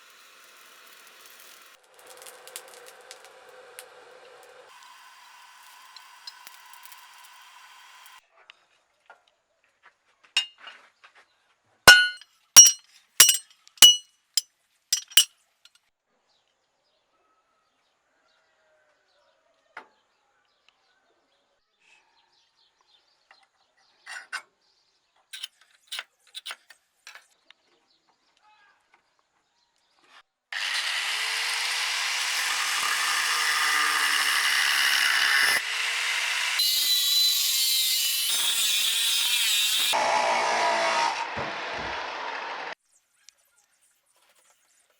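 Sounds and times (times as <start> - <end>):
steel clinking and ringing: 11.9 - 14.0, 15.0 - 15.3
power grinder on steel: 30.6 - 42.8.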